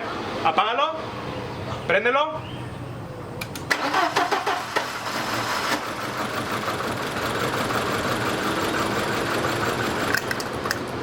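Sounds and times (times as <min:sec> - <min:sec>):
car engine cranking: 0:03.4 - 0:11.0
misfiring engine idling: 0:03.8 - 0:11.0.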